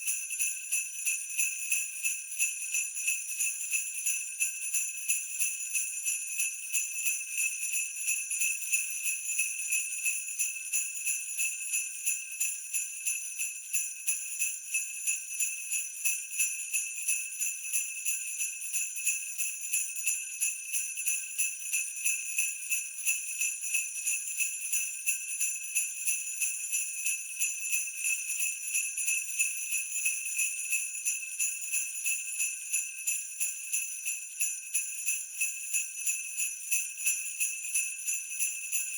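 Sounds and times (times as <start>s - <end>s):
sleigh bells jingling: 16.0s - 38.9s.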